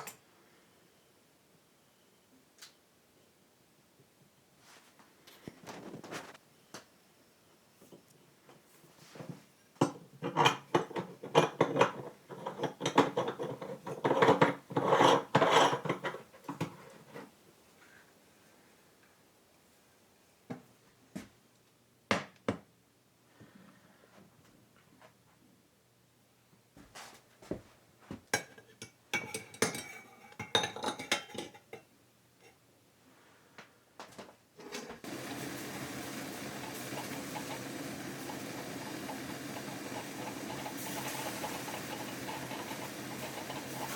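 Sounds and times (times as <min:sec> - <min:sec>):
dishes clinking and scraping: 0:09.8 - 0:17.3, 0:28.4 - 0:32.6, 0:36.4 - 0:43.9.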